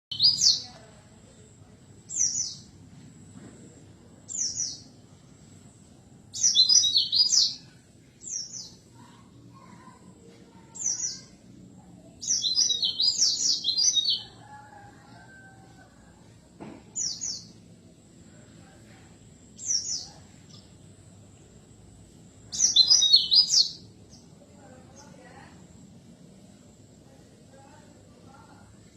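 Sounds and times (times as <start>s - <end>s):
songbird calling: 0.1s - 0.9s, 6.3s - 10.0s, 12.2s - 14.6s, 22.5s - 25.2s
rapid chattering birdsong: 0.1s - 2.7s, 6.3s - 14.5s, 22.4s - 26.6s.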